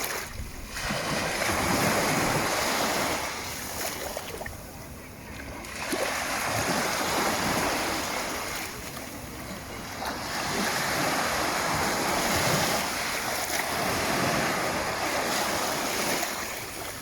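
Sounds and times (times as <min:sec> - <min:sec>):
surf washing onto shore: 0:00.0 - 0:04.7, 0:05.4 - 0:17.0.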